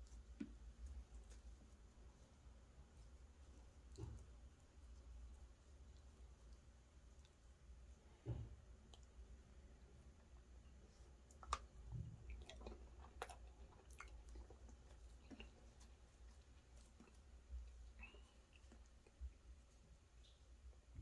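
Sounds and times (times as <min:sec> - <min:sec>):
person chewing food: 0:11.1 - 0:19.7
mouth clicks and smacks: 0:11.3 - 0:19.4.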